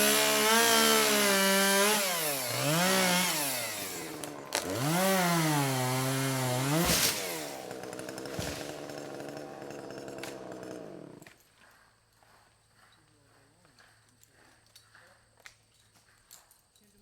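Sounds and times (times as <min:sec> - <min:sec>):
chainsaw revving: 0:00.0 - 0:11.3.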